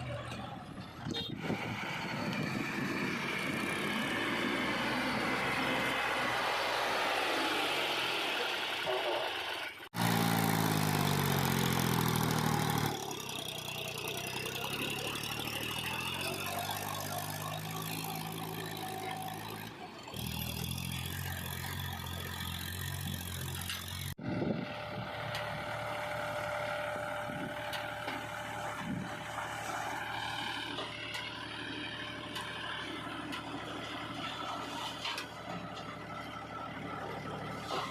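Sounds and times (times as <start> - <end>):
heavy diesel machinery engines: 0.0 - 37.9.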